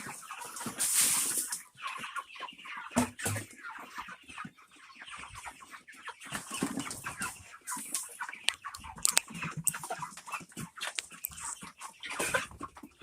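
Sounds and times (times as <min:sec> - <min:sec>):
fowl clucking: 0:00.0 - 0:13.0.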